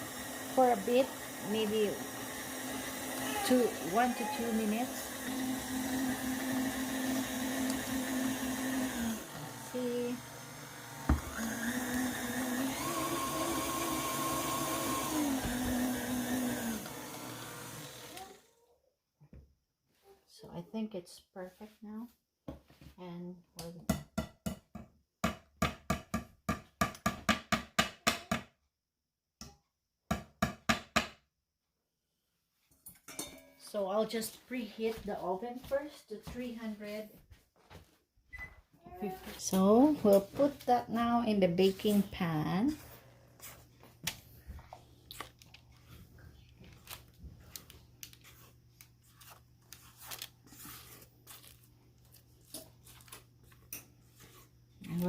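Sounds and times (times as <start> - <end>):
spatula scraping bowl: 0.5 - 10.2, 39.1 - 43.8, 48.2 - 55.0.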